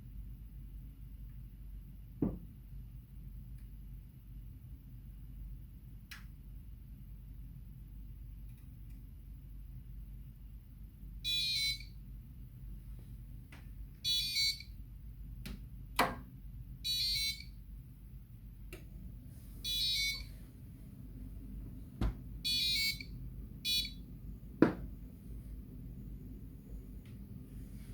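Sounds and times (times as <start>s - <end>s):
high-pitched alarm beeps: 11.2s - 12.0s, 14.0s - 14.8s, 16.8s - 17.6s, 19.6s - 20.3s, 22.4s - 24.1s
sharp knocks: 24.6s - 24.9s.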